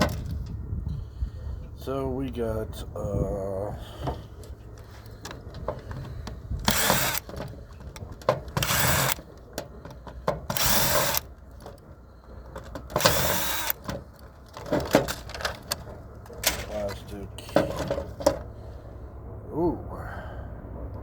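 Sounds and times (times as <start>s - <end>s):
small clicks and handling noise: 4.0s - 18.5s
cordless drill bursts: 6.6s - 9.4s, 10.0s - 11.9s, 12.9s - 14.2s.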